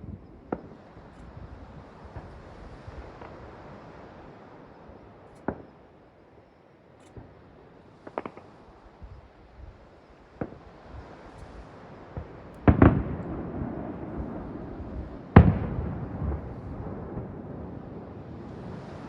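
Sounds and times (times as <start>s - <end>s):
fireworks rumble: 0.0s - 6.3s, 7.0s - 19.0s
fireworks bursting: 7.1s - 9.2s, 10.2s - 19.0s.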